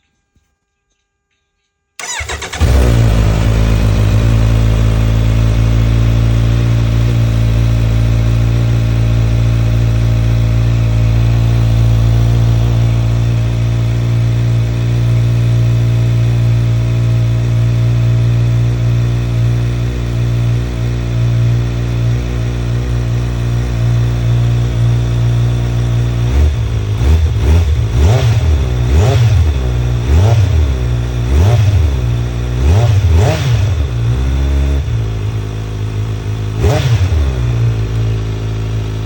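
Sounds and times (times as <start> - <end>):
electric starter cranking: 2.0 - 4.1
motorcycle engine idling: 2.0 - 39.0.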